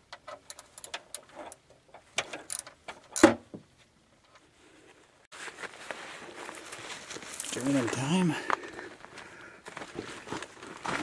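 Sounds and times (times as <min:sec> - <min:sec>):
hand tools clicking and knocking: 0:00.0 - 0:03.4.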